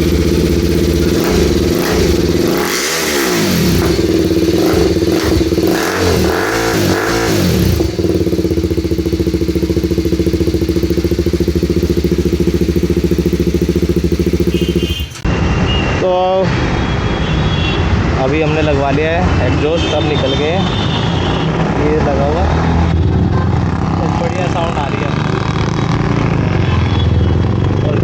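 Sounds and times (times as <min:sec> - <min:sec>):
motorcycle engine idling: 0:00.0 - 0:15.3
motorcycle engine revving: 0:00.0 - 0:15.3, 0:19.2 - 0:28.0.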